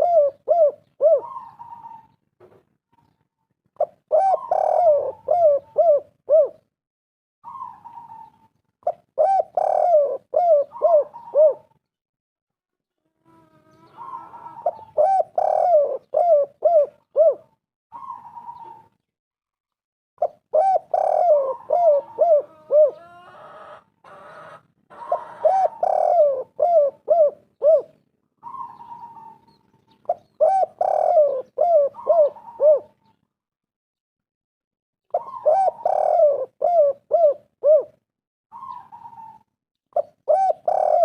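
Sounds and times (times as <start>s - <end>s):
doves cooing: 0.0s - 2.2s, 3.8s - 6.6s, 7.4s - 11.8s, 13.0s - 19.0s, 20.2s - 33.2s, 35.1s - 41.0s
higher steady dove coo: 0.0s - 2.2s, 3.8s - 6.7s, 7.4s - 11.8s, 13.0s - 19.0s, 20.2s - 33.2s, 35.1s - 41.0s.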